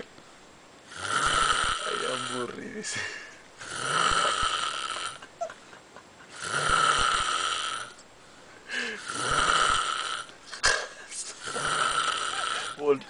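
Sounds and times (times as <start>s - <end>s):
quiet breathing: 0.2s - 4.4s, 6.4s - 12.0s
man snoring: 0.9s - 2.7s, 3.6s - 5.3s, 6.3s - 8.0s, 8.7s - 10.3s, 11.3s - 13.0s.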